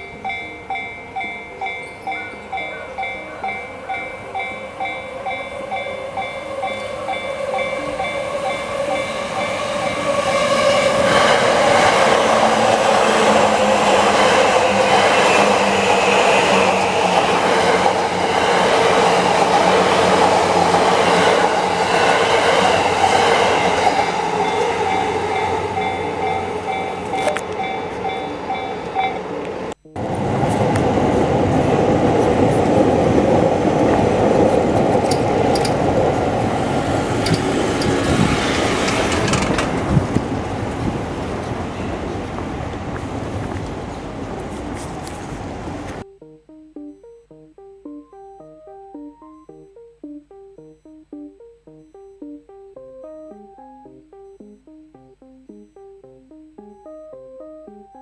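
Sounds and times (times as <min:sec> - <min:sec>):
level crossing bell ringing: 0:00.0 - 0:11.8, 0:17.0 - 0:32.6, 0:46.0 - 0:58.0
electric train running: 0:00.0 - 0:46.0.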